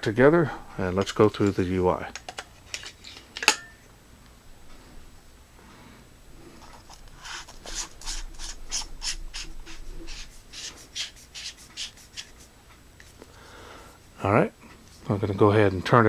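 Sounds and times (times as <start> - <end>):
threads scraping rasps: 6.4 - 13.3.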